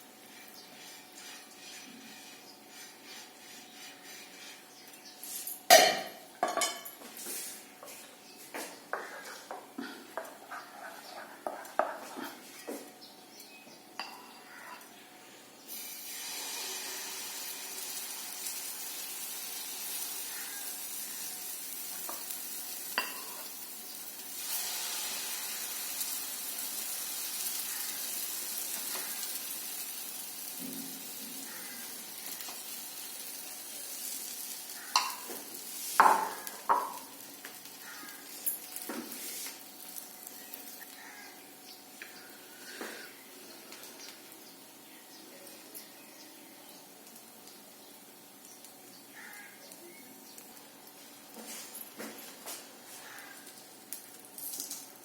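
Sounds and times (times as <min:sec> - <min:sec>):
oil sizzling in a pan: 0:15.7 - 0:41.6.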